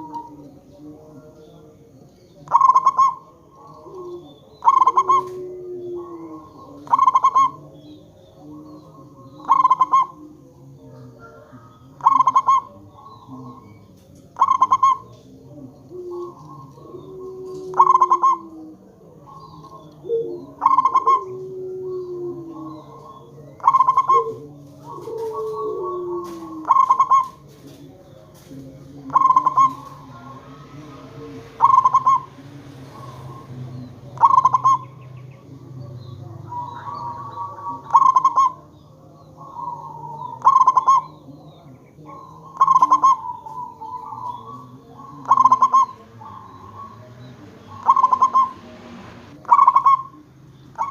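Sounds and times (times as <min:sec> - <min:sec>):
dove cooing: 0:00.0 - 0:50.9
low steady hum: 0:44.7 - 0:49.5.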